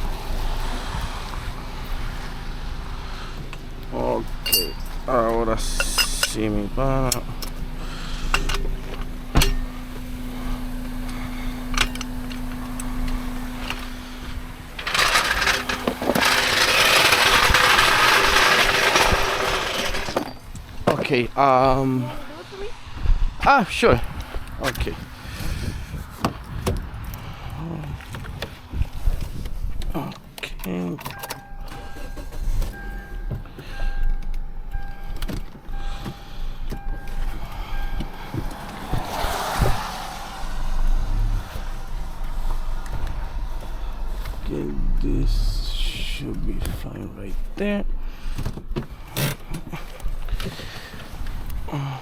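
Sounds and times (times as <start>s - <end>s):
engine rumble: 0.0s - 52.0s
power tool running: 7.2s - 21.1s
electronic warning beep: 31.0s - 38.4s.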